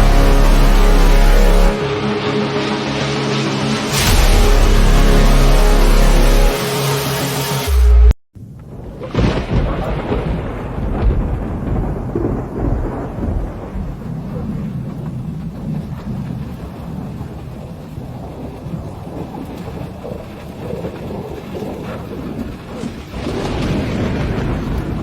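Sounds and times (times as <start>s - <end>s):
thunder rumbling: 0.0s - 3.0s, 8.4s - 25.0s
rain falling: 8.6s - 25.0s.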